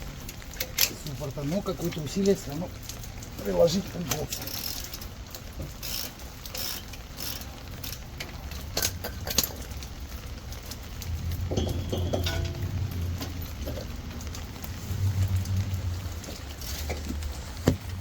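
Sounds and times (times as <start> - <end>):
low steady hum: 11.0 - 16.4
socket wrench clinking on bolts: 11.5 - 12.8.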